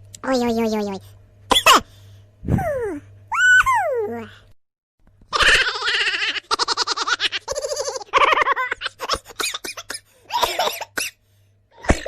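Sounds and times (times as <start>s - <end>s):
cartoonish high-pitched laughing: 2.6s - 4.2s, 5.3s - 9.9s.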